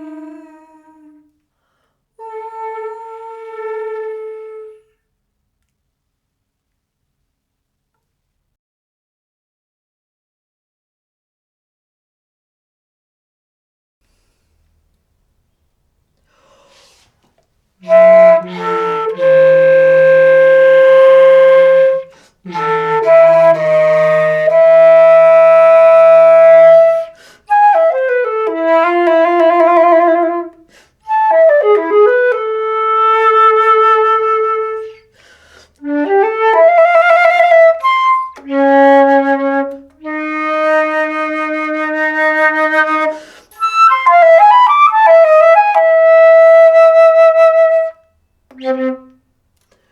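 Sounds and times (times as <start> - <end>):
solo flute playing: 0.0 - 1.3, 2.2 - 5.0, 17.8 - 35.2, 35.8 - 49.3.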